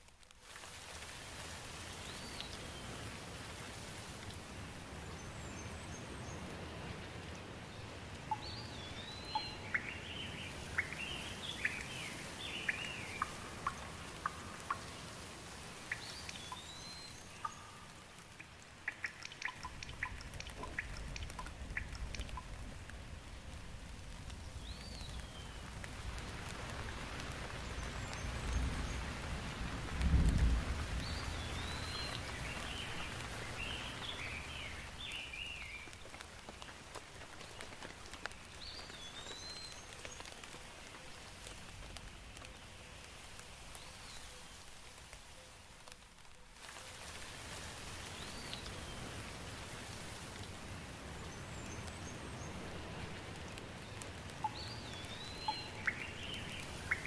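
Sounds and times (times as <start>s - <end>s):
steady rain: 0.0s - 57.0s
bird chirps: 8.3s - 15.0s, 54.4s - 57.0s
drops ticking: 17.4s - 22.6s.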